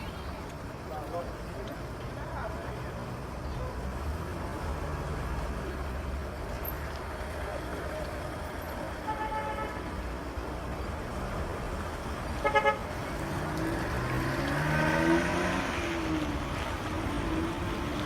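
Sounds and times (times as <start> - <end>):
traffic rumble: 0.0 - 18.0
car horns tooting: 9.0 - 10.0, 12.3 - 13.3
passing vehicle engine: 11.0 - 18.0.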